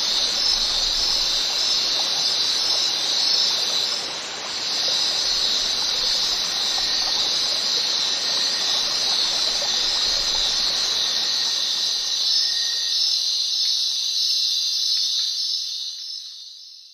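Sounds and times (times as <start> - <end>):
rushing water: 0.0 - 13.0
high-pitched hiss: 0.0 - 16.9.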